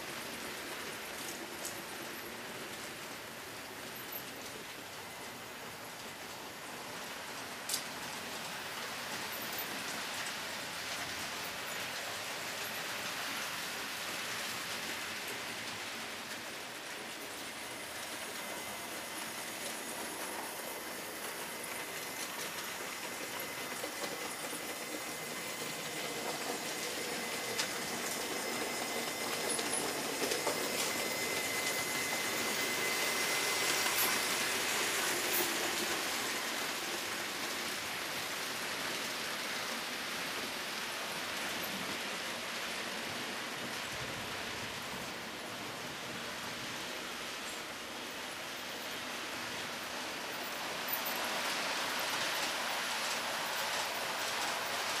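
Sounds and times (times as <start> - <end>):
model train wheels rolling: 0.0 - 55.0
high motor whine: 17.6 - 36.4.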